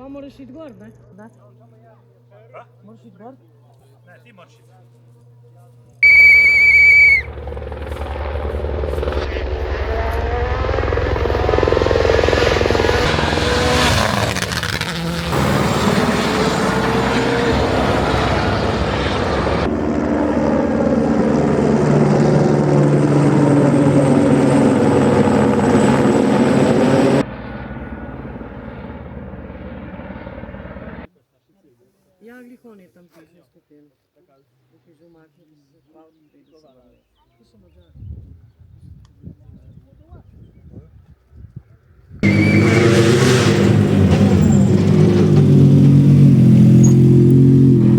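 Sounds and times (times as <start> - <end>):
high beep: 6.0 - 7.3
rally car engine passing: 6.0 - 31.1, 42.2 - 47.9.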